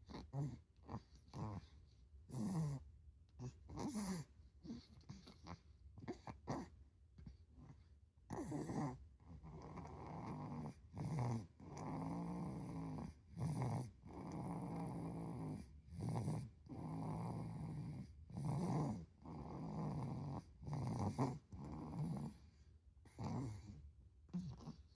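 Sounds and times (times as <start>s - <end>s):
loud rattling snoring: 8.3s - 22.4s, 23.1s - 23.7s.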